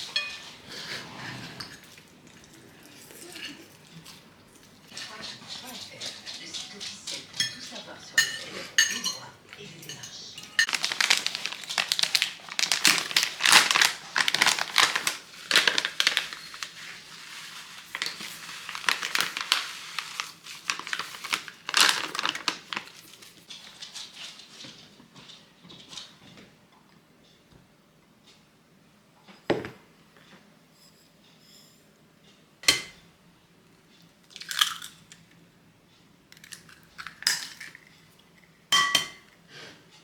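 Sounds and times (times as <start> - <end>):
packaging crinkling: 10.5 - 23.4.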